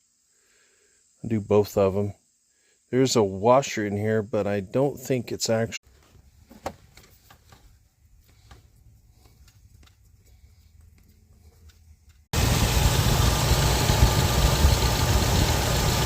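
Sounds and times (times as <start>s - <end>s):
car engine idling: 12.4s - 16.0s.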